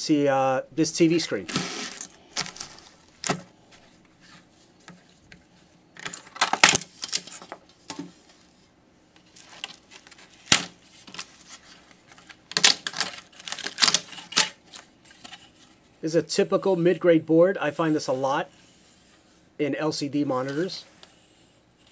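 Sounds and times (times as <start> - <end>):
clicks and rattles of small parts: 12.1 - 14.6.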